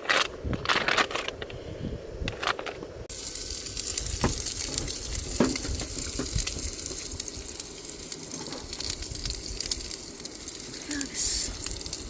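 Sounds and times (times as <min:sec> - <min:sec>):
rain pattering on tent fabric: 0:03.1 - 0:12.0.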